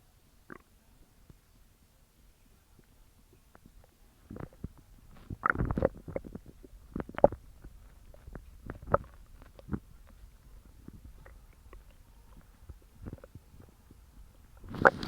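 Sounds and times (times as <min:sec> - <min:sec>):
stomach growling: 0:00.5 - 0:00.7, 0:03.8 - 0:13.9, 0:14.6 - 0:15.0.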